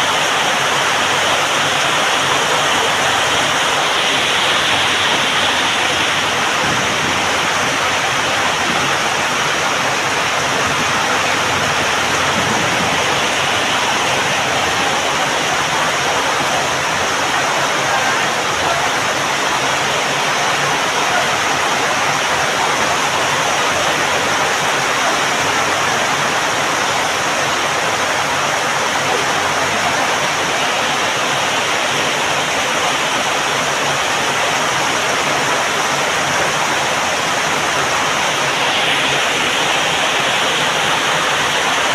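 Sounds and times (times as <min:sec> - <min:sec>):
heavy rain falling: 0:00.0 - 0:41.9.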